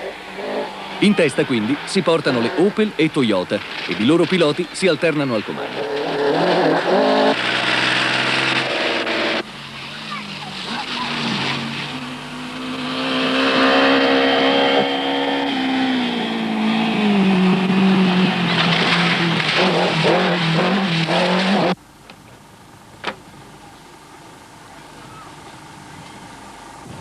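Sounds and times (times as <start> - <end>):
rally car engine revving hard: 5.6 - 21.8.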